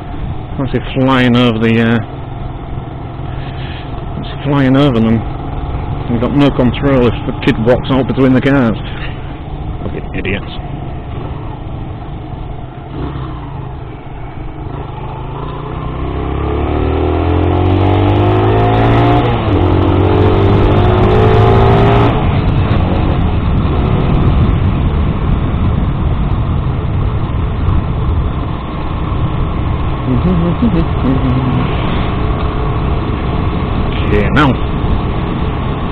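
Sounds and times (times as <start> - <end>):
motorcycle engine accelerating: 0.0 - 35.9
wind noise on microphone: 17.0 - 35.9.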